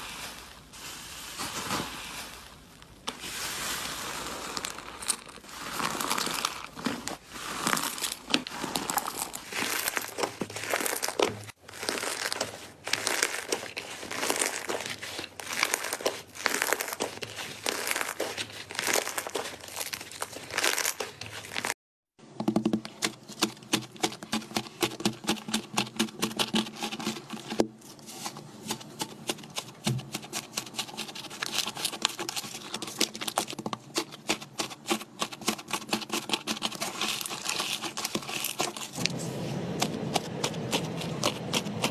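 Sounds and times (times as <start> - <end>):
slime squishing with crackling clicks: 9.5 - 21.7.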